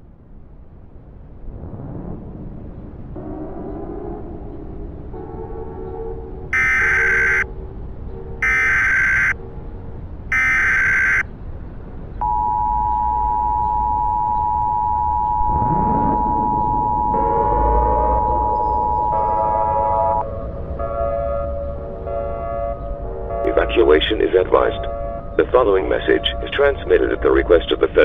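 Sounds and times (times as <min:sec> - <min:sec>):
two-tone attention signal: 0:06.6 - 0:07.4, 0:08.4 - 0:09.4, 0:10.3 - 0:11.2, 0:12.2 - 0:20.2
warbling digital data tone: 0:06.6 - 0:07.4, 0:08.4 - 0:09.4, 0:10.3 - 0:11.2, 0:12.2 - 0:20.2.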